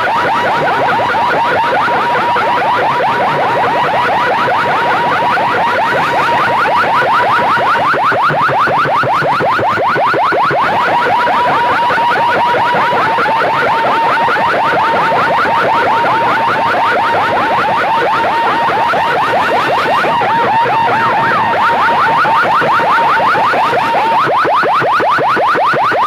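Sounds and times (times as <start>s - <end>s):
steady high tone: 14.8s - 24.2s.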